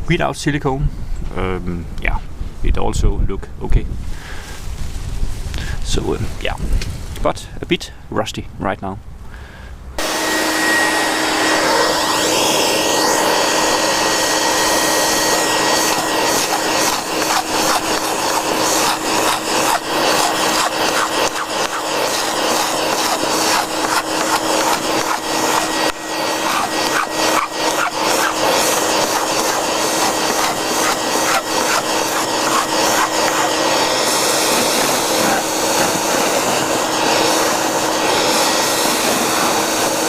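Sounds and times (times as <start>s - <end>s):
vacuum cleaner running: 10.0s - 40.0s
scraper scraping paint off hull: 11.4s - 40.0s.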